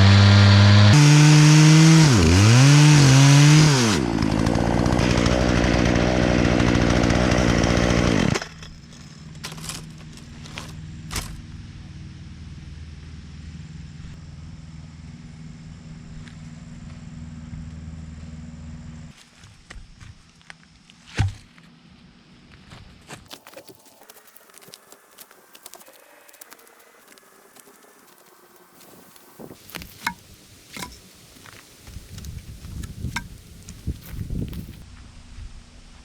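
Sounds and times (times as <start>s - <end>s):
chainsaw cutting wood: 0.0s - 8.8s, 23.3s - 34.8s.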